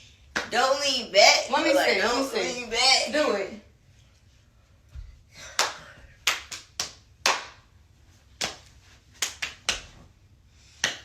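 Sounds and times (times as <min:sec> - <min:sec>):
hand claps: 0:00.3 - 0:00.6, 0:05.5 - 0:07.7, 0:08.4 - 0:10.0, 0:10.8 - 0:11.0.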